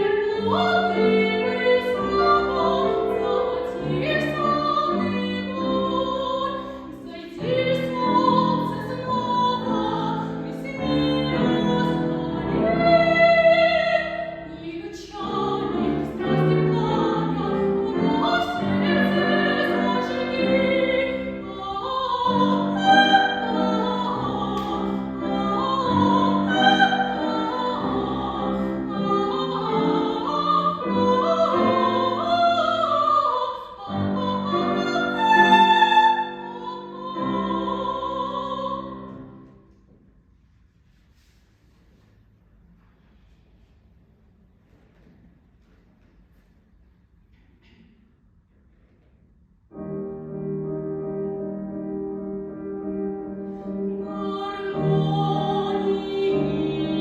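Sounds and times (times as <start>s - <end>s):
woman singing operatically: 0.0s - 39.1s, 53.9s - 57.0s
piano accompaniment: 0.0s - 39.6s, 49.7s - 57.0s.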